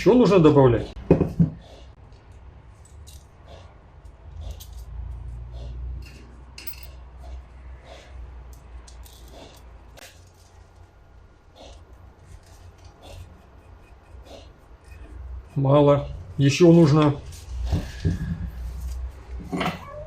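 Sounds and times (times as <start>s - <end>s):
small metal parts clinking: 2.7s - 3.4s, 4.5s - 5.0s, 6.0s - 7.0s, 8.5s - 10.7s.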